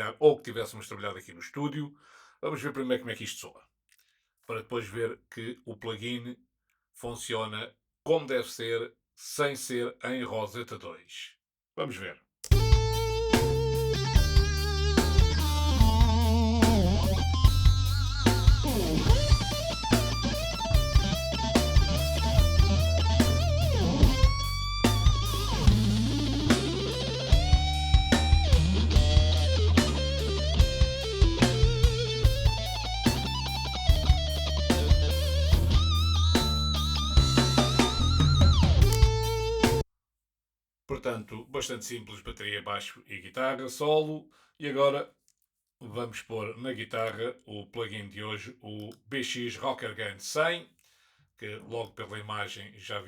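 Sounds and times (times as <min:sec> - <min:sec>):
bass guitar: 0:12.5 - 0:39.8
drum kit: 0:12.5 - 0:39.8
electric guitar solo: 0:12.6 - 0:39.8.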